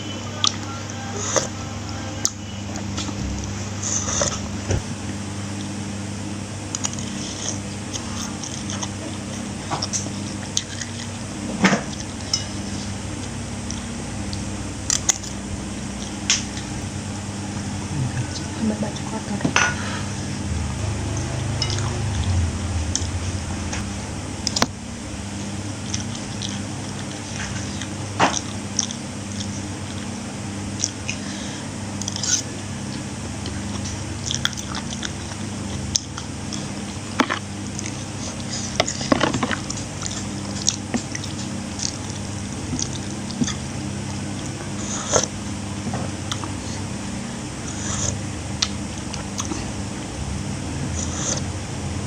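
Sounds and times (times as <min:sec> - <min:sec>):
steady low hum: 0:00.0 - 0:52.0
person chewing food: 0:06.7 - 0:18.6, 0:19.7 - 0:45.4, 0:46.1 - 0:46.9, 0:47.6 - 0:49.8.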